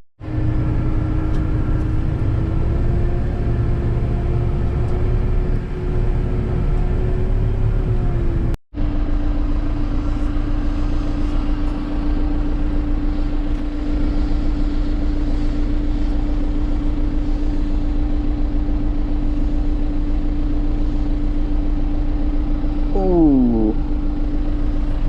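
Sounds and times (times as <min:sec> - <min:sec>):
diesel engine running: 0:00.2 - 0:08.6.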